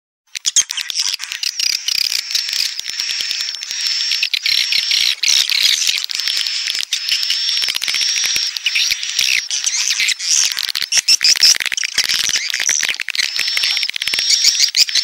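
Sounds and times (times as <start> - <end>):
swiftlet calls chorus: 0.4 - 15.0.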